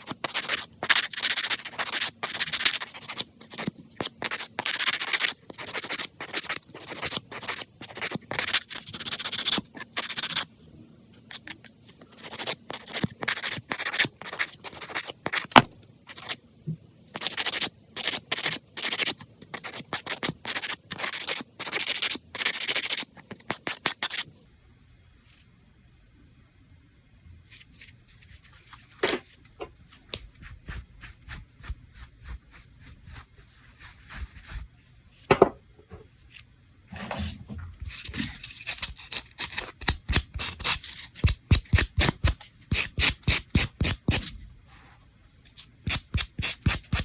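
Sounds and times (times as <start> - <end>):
manicure tool scraping fingernails: 45.6 - 47.0.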